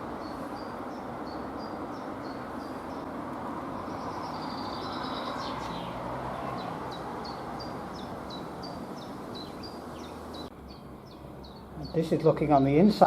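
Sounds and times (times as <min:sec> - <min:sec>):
small bird chirping: 0:00.0 - 0:13.0.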